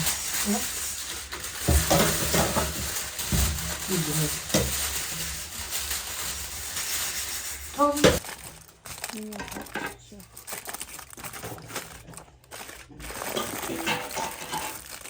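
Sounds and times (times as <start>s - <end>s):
meat sizzling in a pot: 0.0s - 8.8s, 13.3s - 14.9s.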